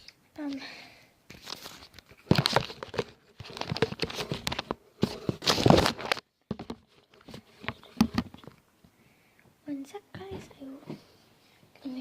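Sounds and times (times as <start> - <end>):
rustling and crinkling: 1.3 - 8.6
knocks of rummaging: 2.2 - 8.6.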